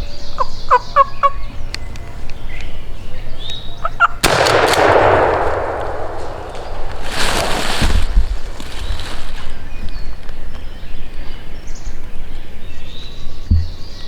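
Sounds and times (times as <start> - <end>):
shotgun shot with echo: 4.2 - 7.2.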